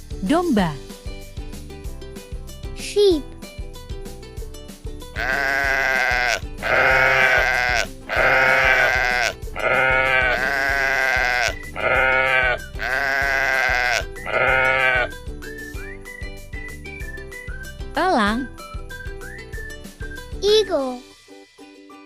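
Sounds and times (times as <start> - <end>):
sheep bleating: 5.2 - 15.1.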